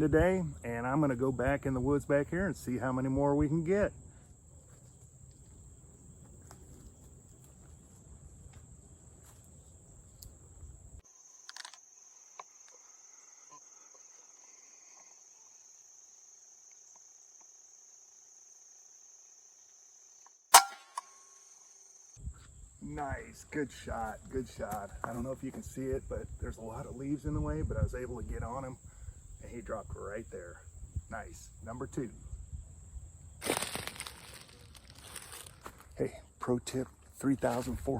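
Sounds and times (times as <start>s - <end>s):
high-pitched insect trilling: 11.0s - 20.4s
air rifle firing: 20.5s - 21.2s.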